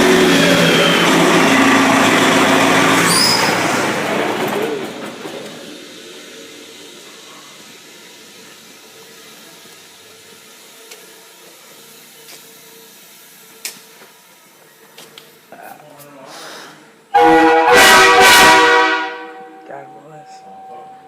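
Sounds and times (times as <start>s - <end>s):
truck air system hissing: 5.5s - 15.5s, 16.1s - 17.1s.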